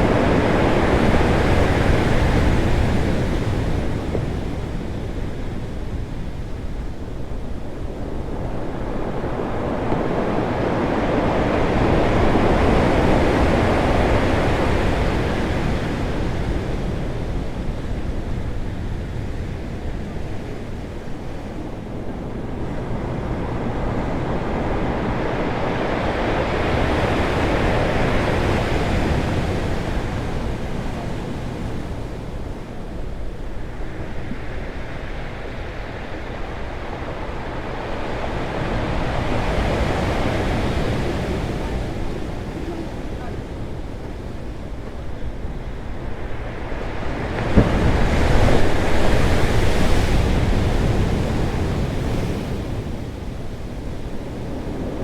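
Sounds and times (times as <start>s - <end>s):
waves crashing on rocks: 23.2s - 55.0s.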